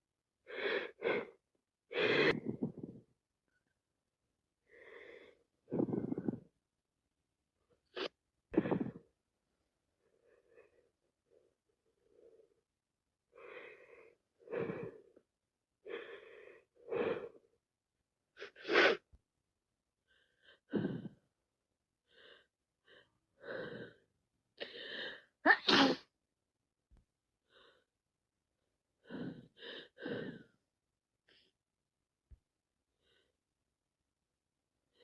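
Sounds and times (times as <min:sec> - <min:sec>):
gasping in-breath: 0:04.7 - 0:06.5, 0:20.1 - 0:21.3, 0:29.0 - 0:30.6
person sneezing: 0:25.5 - 0:26.1.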